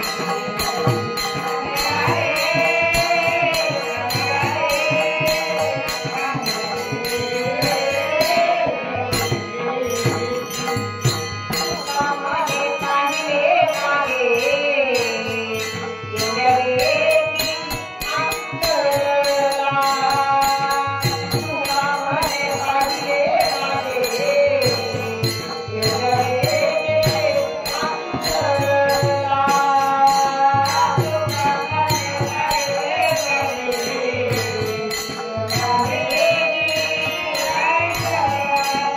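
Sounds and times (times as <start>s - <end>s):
hand cymbals: 0.0s - 38.9s
woman singing devotional song: 0.0s - 38.9s.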